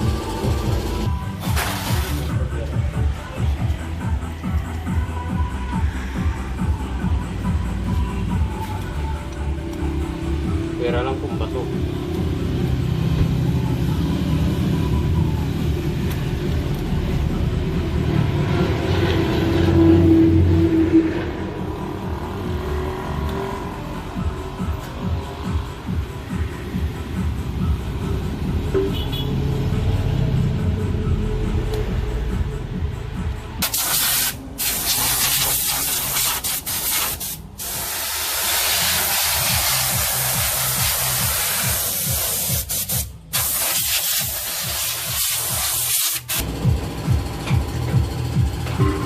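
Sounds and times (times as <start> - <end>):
diesel engine running: 0.0 - 42.3, 46.4 - 49.0
hissing spray: 1.3 - 2.4, 33.6 - 46.4.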